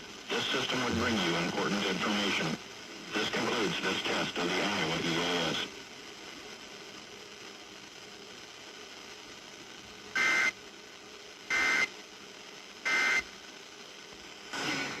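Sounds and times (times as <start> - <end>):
faint steady hiss: 0.0 - 15.0.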